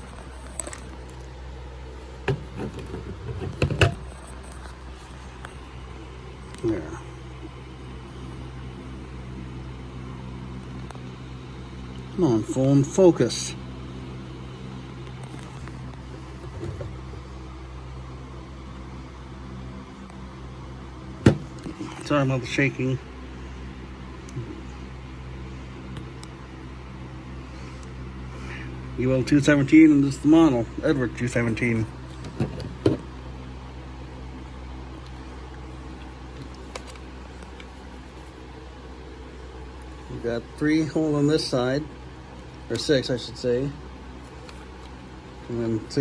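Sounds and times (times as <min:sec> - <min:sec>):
low mechanical hum: 0:00.0 - 0:46.0
short thump: 0:21.2 - 0:21.8.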